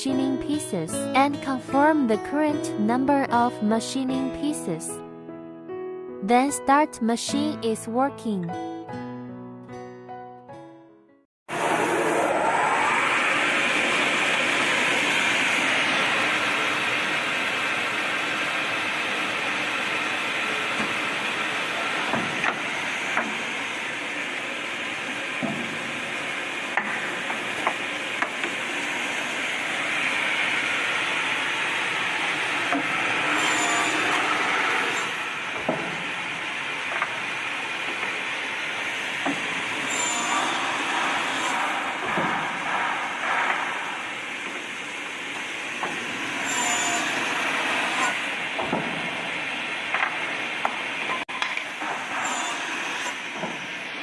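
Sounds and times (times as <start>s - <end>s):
saw machine running: 11.5s - 54.0s.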